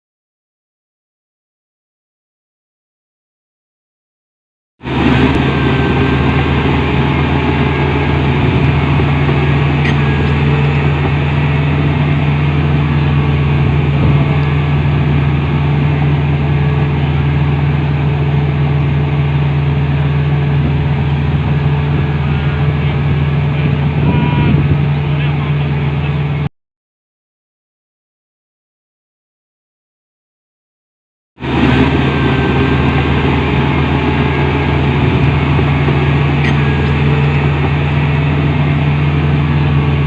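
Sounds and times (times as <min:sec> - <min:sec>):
bulldozer diesel engine running: 0:04.8 - 0:26.5, 0:31.4 - 0:40.0.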